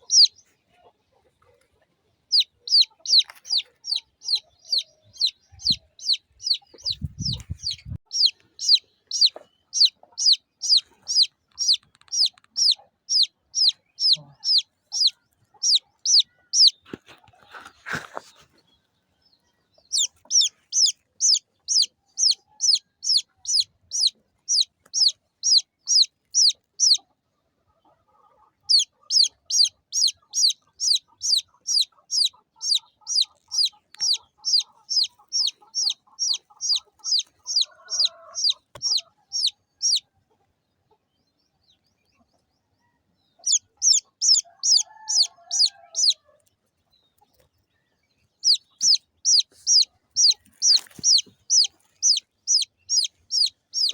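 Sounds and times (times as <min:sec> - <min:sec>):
baby chick peeping: 0:00.0 - 0:53.9
soft low chattering call: 0:02.3 - 0:18.5, 0:28.6 - 0:40.0, 0:48.4 - 0:53.9.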